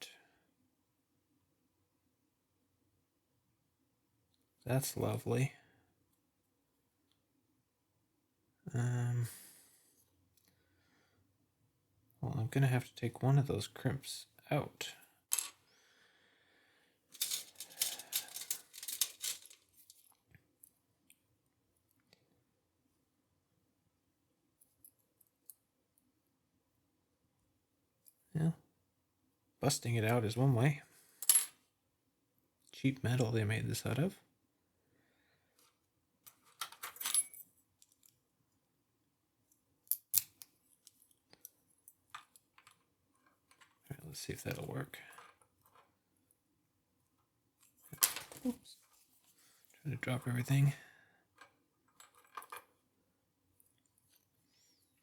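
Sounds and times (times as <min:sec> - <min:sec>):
metal tools clinking on padlock: 0:36.6 - 0:38.1.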